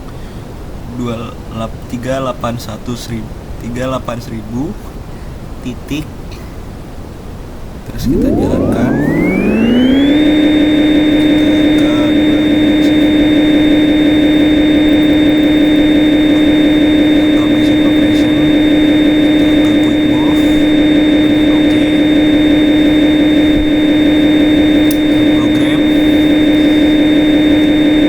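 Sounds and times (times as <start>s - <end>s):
loud steady electric whine: 6.8s - 28.0s.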